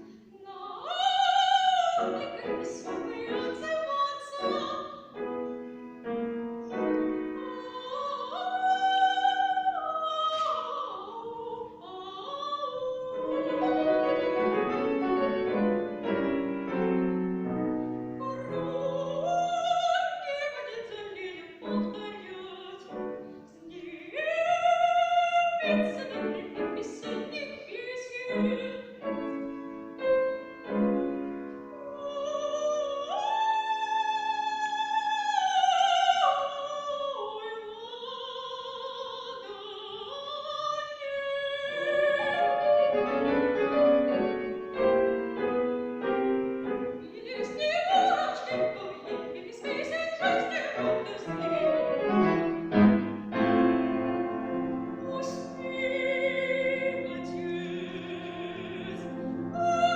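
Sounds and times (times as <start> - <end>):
woman singing operatic style: 0.0 - 5.5, 6.7 - 59.9
piano accompaniment: 1.6 - 9.2, 13.2 - 20.0, 28.3 - 32.1, 41.6 - 59.9.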